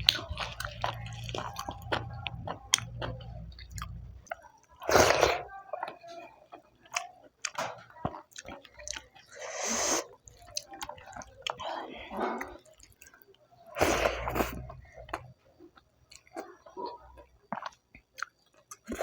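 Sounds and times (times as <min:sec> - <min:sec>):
noisy slurps: 0:00.0 - 0:06.0, 0:13.8 - 0:14.9
person chewing with mouth clicks: 0:00.0 - 0:19.0.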